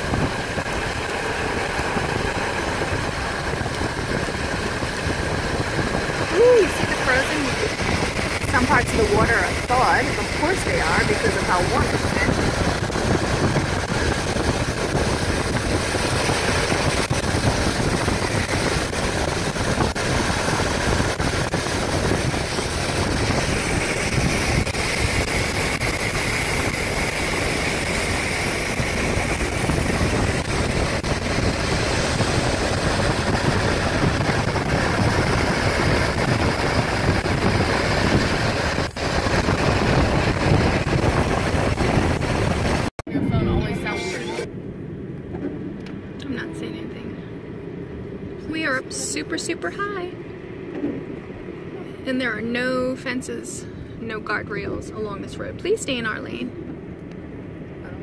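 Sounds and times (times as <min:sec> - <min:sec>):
tyre and wind noise: 0:00.0 - 0:43.6
car engine running: 0:00.0 - 0:53.0.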